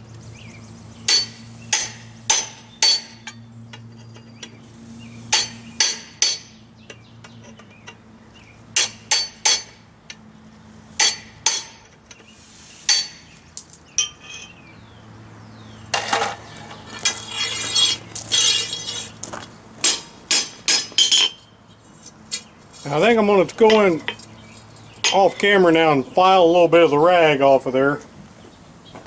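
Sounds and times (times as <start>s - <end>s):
hammer ringing on anvil: 1.1s - 3.5s, 5.3s - 7.0s, 8.8s - 10.1s, 11.0s - 12.2s, 12.9s - 13.4s
rapid scratchy scraping: 16.0s - 19.3s.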